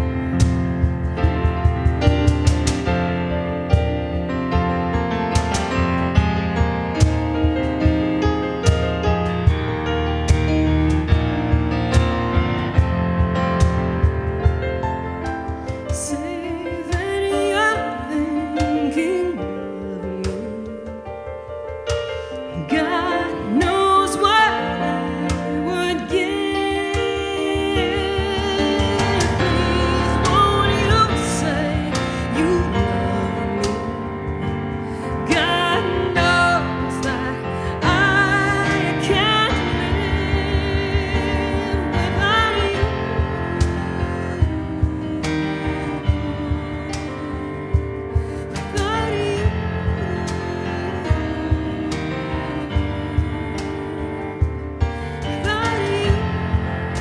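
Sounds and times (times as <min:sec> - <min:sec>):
guitar and keyboard accompaniment: 0:00.0 - 0:57.0
woman singing: 0:15.9 - 0:21.2, 0:22.5 - 0:57.0.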